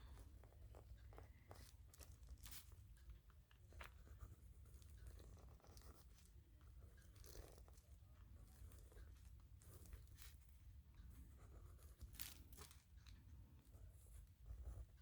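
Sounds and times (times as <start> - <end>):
pen scratching on paper: 3.6 - 13.0, 13.6 - 15.0.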